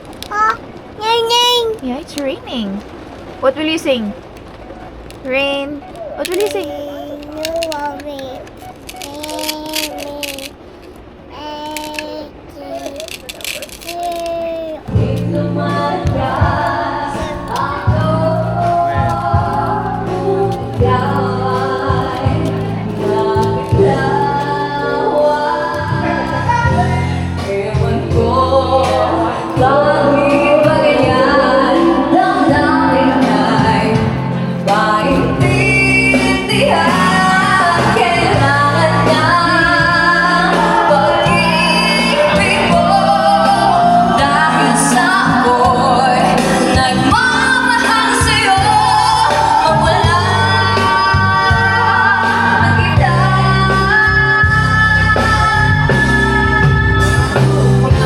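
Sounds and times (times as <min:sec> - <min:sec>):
instrumental backing: 0:14.8 - 0:58.0
woman singing: 0:14.9 - 0:58.0.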